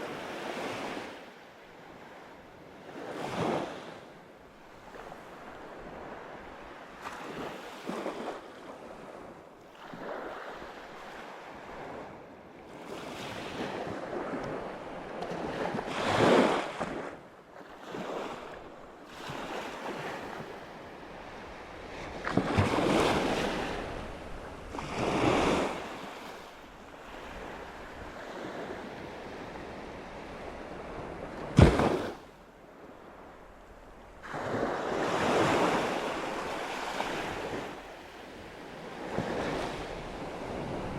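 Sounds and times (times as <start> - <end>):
sea waves washing in: 15.7 - 40.9
wind on microphone: 39.0 - 40.9.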